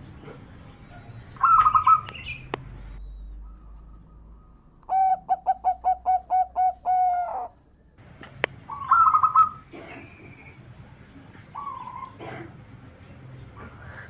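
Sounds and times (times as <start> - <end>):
dove cooing: 1.4 - 2.2, 3.6 - 7.6, 8.6 - 10.6, 11.5 - 14.0.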